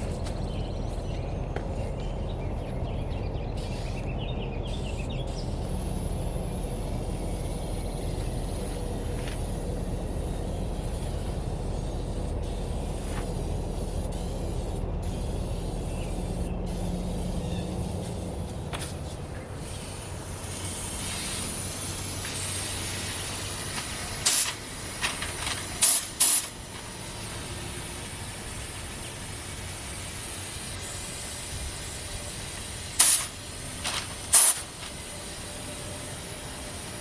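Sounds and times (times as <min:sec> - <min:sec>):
low rumble: 0:00.0 - 0:22.2
spray can hissing: 0:05.4 - 0:37.0.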